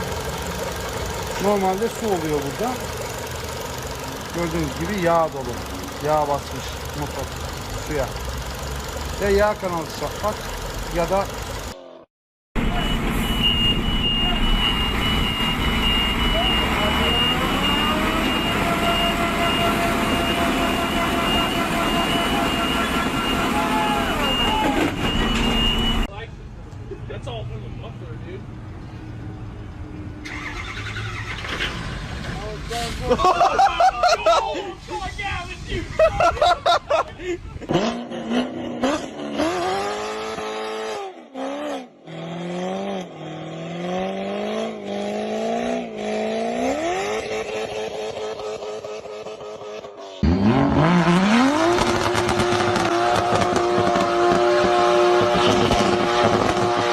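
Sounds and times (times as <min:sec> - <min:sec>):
car engine revving: 0:00.0 - 0:11.8, 0:12.6 - 0:26.0, 0:37.6 - 0:56.9
vehicle engine running: 0:00.0 - 0:11.8
high electronic beep: 0:12.6 - 0:26.1.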